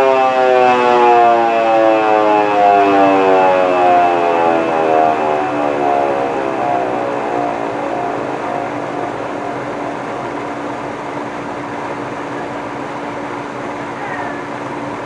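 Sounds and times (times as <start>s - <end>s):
siren growling low: 0.0s - 15.0s.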